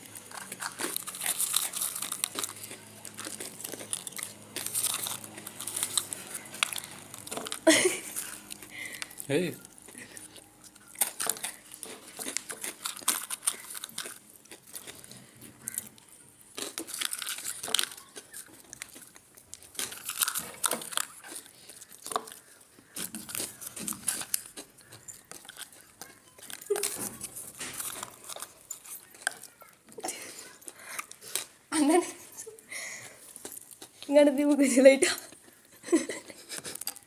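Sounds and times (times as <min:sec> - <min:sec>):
rustling and crinkling: 0:00.0 - 0:37.0.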